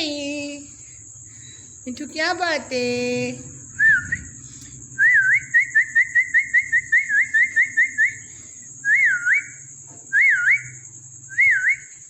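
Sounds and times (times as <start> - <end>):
person whistling: 3.8 - 4.3.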